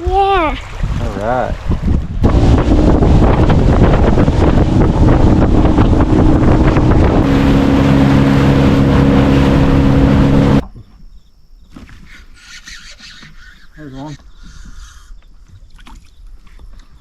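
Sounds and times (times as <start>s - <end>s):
water rushing: 0.0s - 10.6s
heavy wind: 0.0s - 10.7s
motorboat engine drone: 2.2s - 10.7s.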